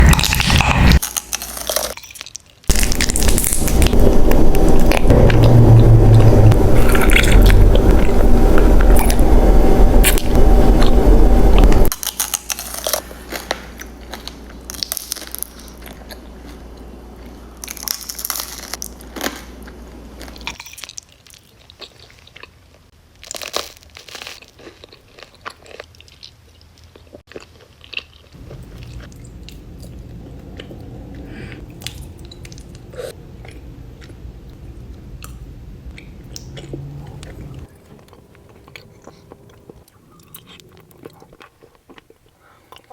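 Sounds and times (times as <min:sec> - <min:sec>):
honeycomb chewing crunches: 0:17.2 - 0:30.8.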